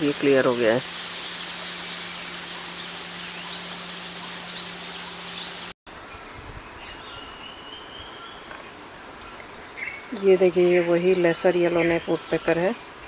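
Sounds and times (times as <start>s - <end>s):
insects chirring: 0.0s - 5.7s.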